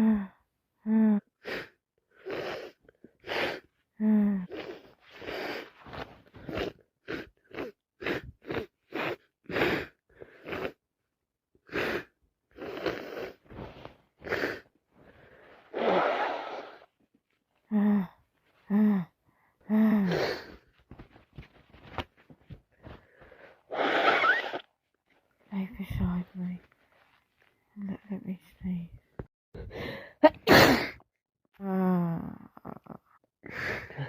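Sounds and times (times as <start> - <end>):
quick sniffs and breaths: 1.4 - 3.7, 4.5 - 7.3, 8.0 - 10.8, 11.6 - 16.9, 19.3 - 24.6
woman sneezing: 30.2 - 31.0.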